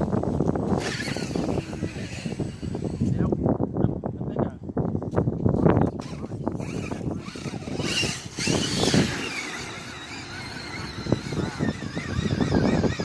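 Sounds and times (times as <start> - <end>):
electric motor whining: 0.6 - 3.4, 5.9 - 13.0.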